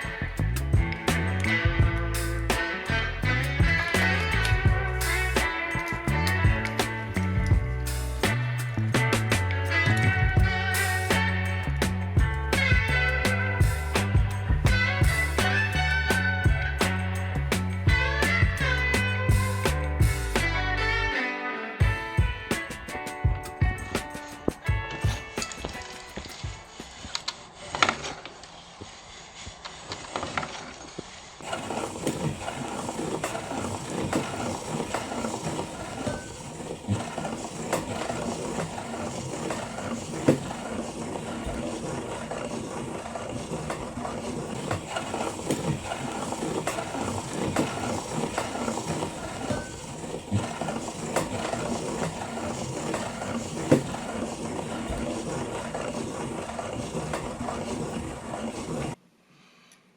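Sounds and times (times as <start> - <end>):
meat grinder crunching chocolate: 31.4 - 59.0.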